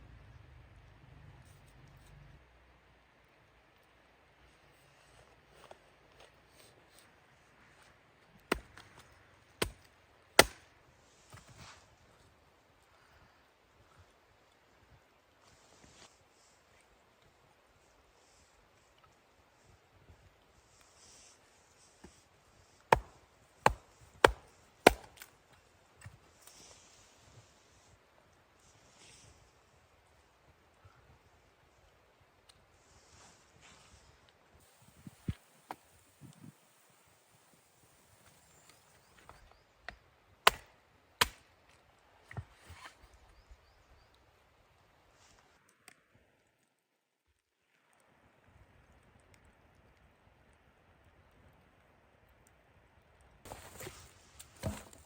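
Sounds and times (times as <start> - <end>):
chopping strikes into wood: 8.5 - 8.8, 9.6 - 9.8, 10.4 - 10.6, 22.9 - 25.3, 40.4 - 41.4, 54.6 - 55.0.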